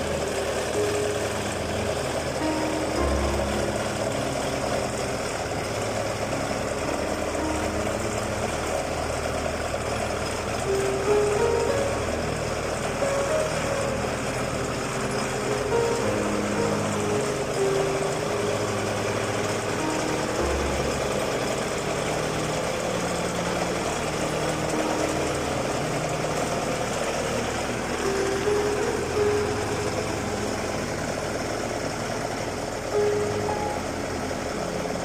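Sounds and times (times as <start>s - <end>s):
diesel engine running: 0.0s - 35.0s.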